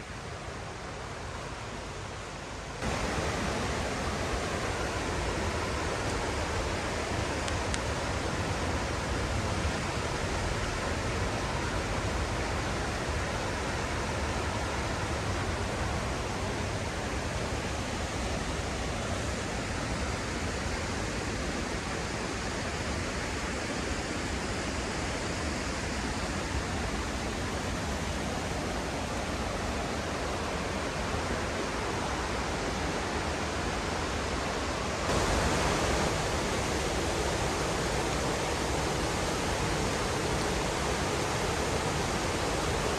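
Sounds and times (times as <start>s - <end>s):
mountain stream rushing: 0.0s - 42.9s.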